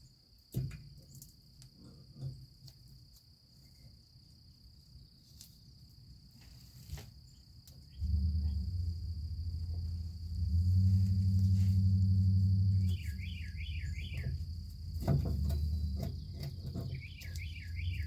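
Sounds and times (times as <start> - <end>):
crickets chirping: 0.0 - 18.0
low droning hum: 7.8 - 18.0.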